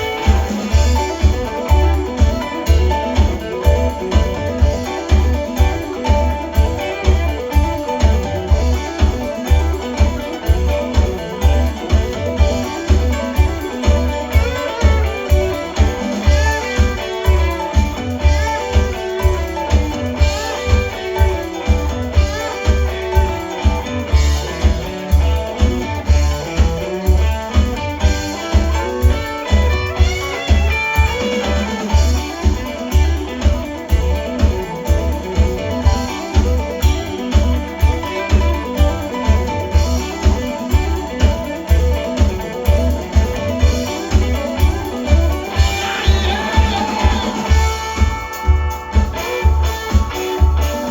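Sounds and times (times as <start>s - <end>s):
electric guitar line: 0.0s - 50.9s.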